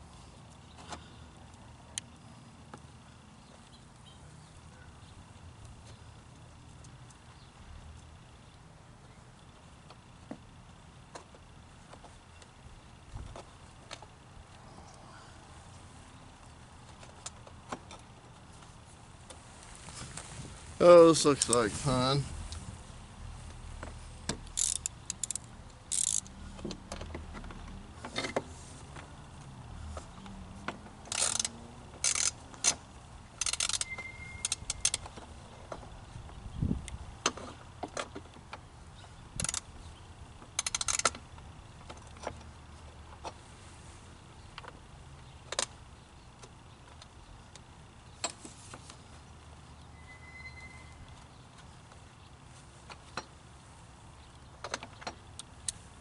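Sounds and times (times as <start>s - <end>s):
hand tools clicking and clattering: 24.4s - 29.1s, 30.6s - 35.9s.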